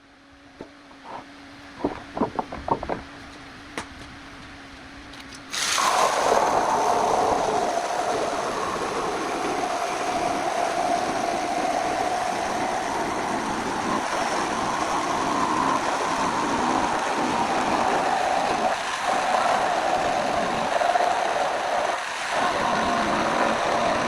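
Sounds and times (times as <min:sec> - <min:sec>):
jigsaw cutting wood: 0:05.5 - 0:24.0.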